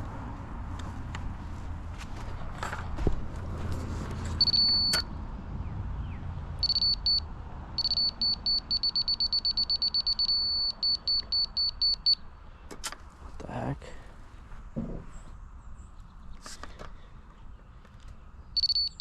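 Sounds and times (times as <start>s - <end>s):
high-pitched electronic beeping: 6.6s - 7.2s, 7.8s - 12.2s, 18.6s - 19.0s.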